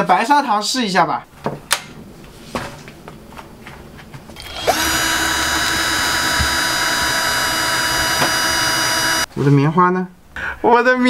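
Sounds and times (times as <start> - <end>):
electric drill running: 4.4 - 9.3.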